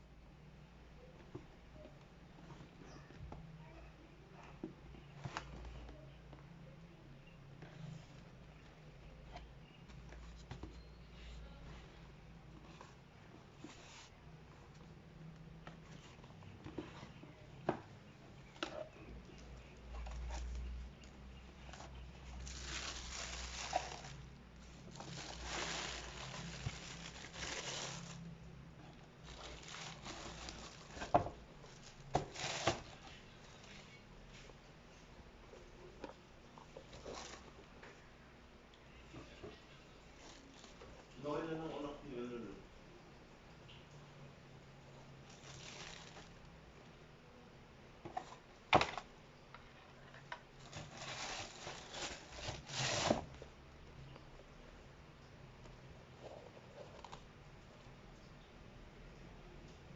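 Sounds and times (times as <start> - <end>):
rustling of packaging: 18.4 - 34.5, 36.0 - 38.0, 45.2 - 46.5, 50.0 - 53.5
wrapping paper crinkling: 22.3 - 28.3, 29.2 - 33.8, 45.3 - 46.4, 50.6 - 53.2.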